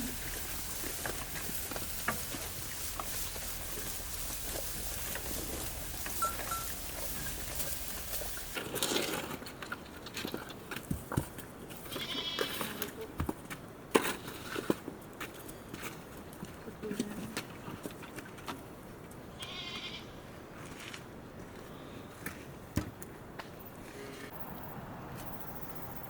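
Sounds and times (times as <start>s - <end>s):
livestock bleating: 11.9s - 12.7s, 19.4s - 20.1s.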